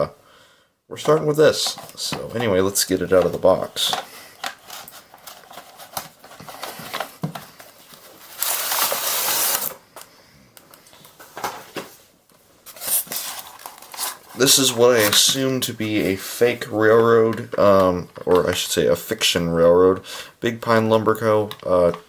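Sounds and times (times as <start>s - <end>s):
packaging rustling: 1.0s - 11.9s, 12.6s - 16.6s
packaging clicks: 8.3s - 10.9s.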